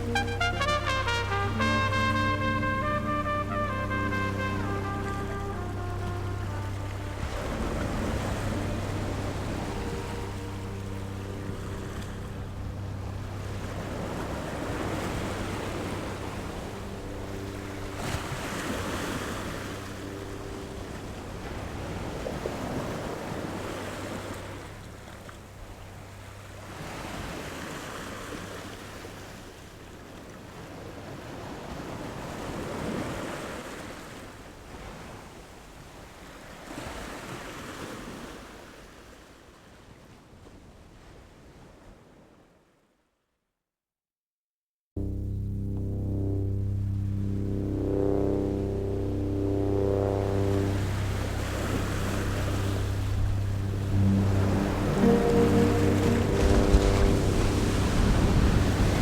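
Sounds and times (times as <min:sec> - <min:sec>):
faint held tones: 0:00.0 - 0:22.6, 0:45.0 - 0:59.0
low steady hum: 0:00.0 - 0:30.4, 0:45.0 - 0:59.0
ocean waves washing on shore: 0:00.0 - 0:42.3, 0:47.0 - 0:59.0.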